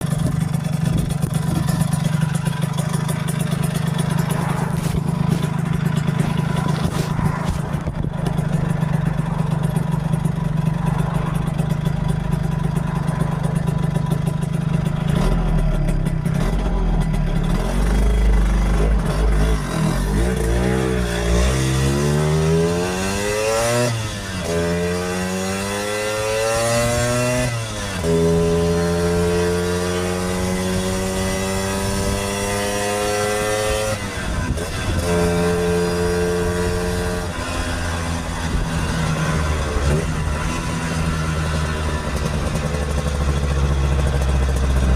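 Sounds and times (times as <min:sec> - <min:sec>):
scooter engine revving: 0:00.0 - 0:44.9.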